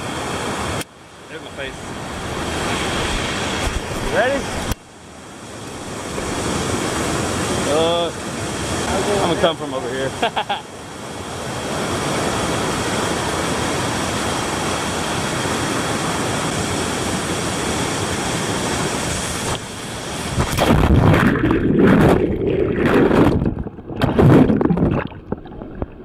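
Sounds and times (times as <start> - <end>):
waterfall rushing: 0.0 - 4.8, 5.6 - 23.2
water sloshing and splashing: 1.8 - 4.8, 18.0 - 26.0.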